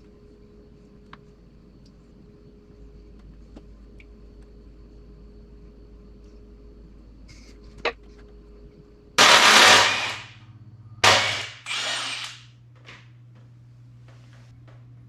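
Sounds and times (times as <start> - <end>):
power tool bursts: 9.2 - 10.4, 11.0 - 12.5.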